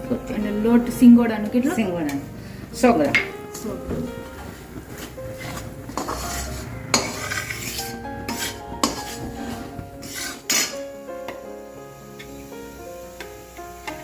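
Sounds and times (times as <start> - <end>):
metal spoon scraping a pan: 5.0 - 10.8.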